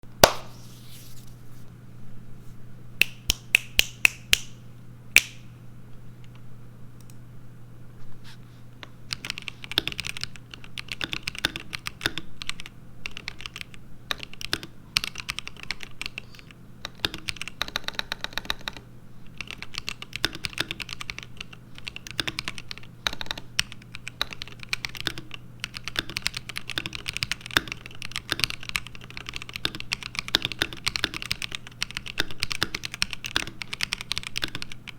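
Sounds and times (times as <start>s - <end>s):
mechanical keyboard typing: 9.1s - 34.9s.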